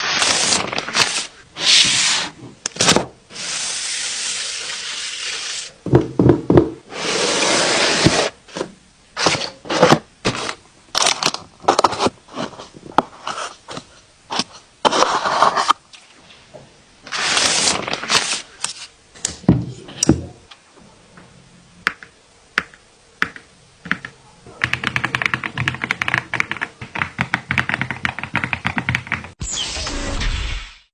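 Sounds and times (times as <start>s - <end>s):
packaging rustling and scraping: 0.0s - 4.9s, 6.9s - 15.8s, 17.1s - 18.9s.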